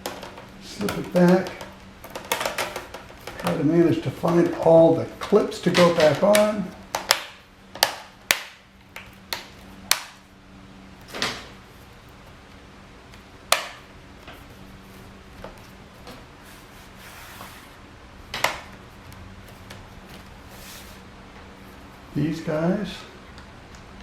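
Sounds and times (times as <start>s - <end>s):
plastic clips clicking: 0.0s - 10.2s
steady low hum: 0.0s - 24.0s.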